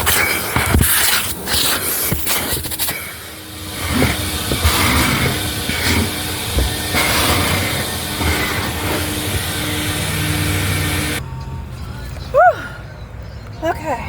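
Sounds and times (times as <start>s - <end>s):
vacuum cleaner running: 0.0s - 11.2s
nozzle knocking against car: 3.8s - 11.2s.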